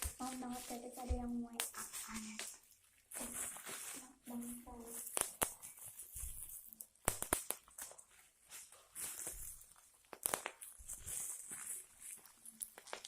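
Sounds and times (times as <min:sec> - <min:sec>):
plastic crinkling: 0:00.0 - 0:13.0
sharp clicks and pops: 0:04.9 - 0:08.0, 0:09.2 - 0:11.2, 0:12.0 - 0:13.0.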